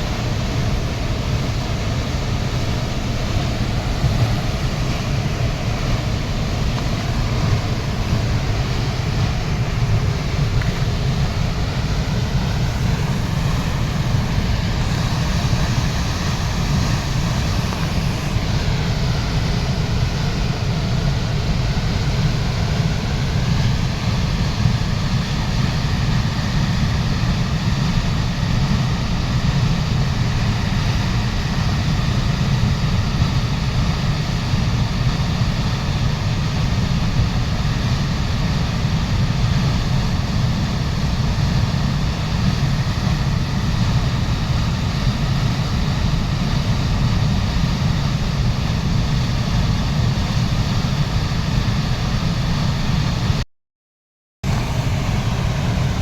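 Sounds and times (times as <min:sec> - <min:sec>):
waterfall rushing: 0:00.1 - 0:20.9.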